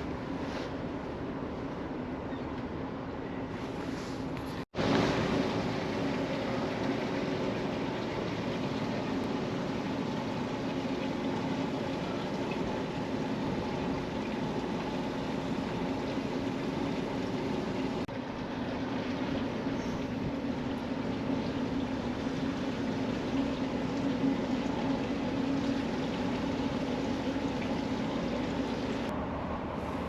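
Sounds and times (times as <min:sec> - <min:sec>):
ship engine hum: 0:00.0 - 0:30.0
churning water rushing: 0:04.8 - 0:29.1.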